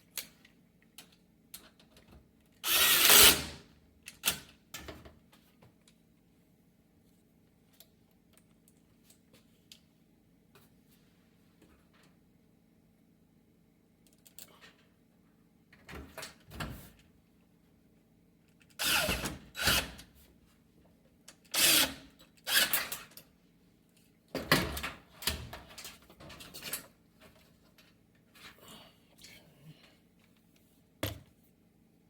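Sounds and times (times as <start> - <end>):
cordless drill driving screws: 2.6 - 3.6, 18.8 - 19.9, 21.6 - 22.9.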